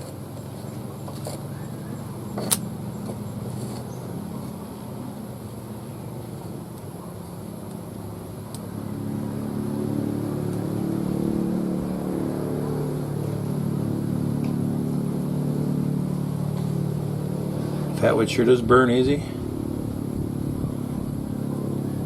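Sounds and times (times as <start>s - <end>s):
motor engine running: 0.0s - 22.0s.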